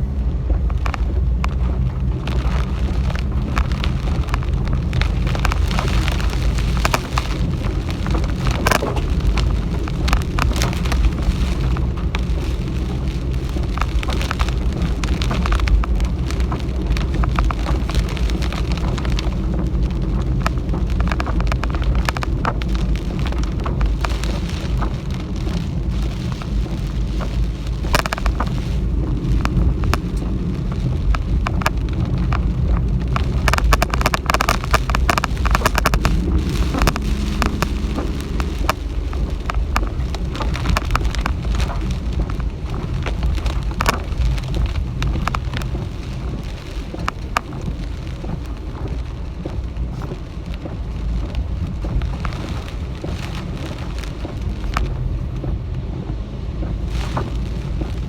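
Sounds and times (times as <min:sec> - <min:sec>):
heavy rain pelting a car: 0:00.0 - 0:58.0
wind and road rumble: 0:00.0 - 0:58.0.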